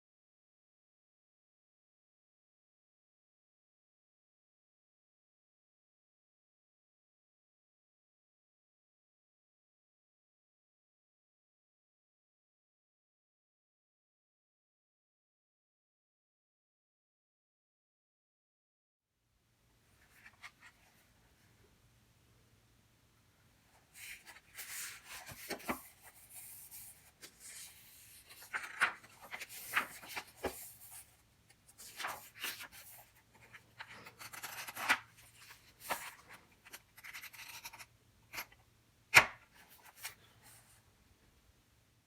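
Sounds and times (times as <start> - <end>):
paper rustling and scratching: 23.9 - 38.5.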